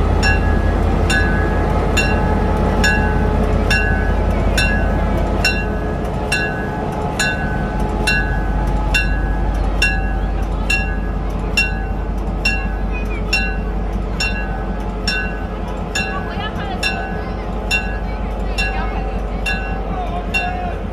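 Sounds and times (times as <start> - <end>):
diesel engine idling: 0.0 - 20.9
locomotive bell ringing: 0.0 - 20.9.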